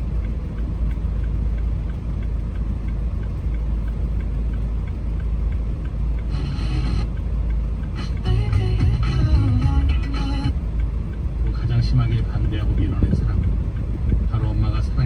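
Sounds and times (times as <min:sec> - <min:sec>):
car rumbling on the move: 0:00.0 - 0:15.0
faint regular ticking: 0:00.0 - 0:15.0.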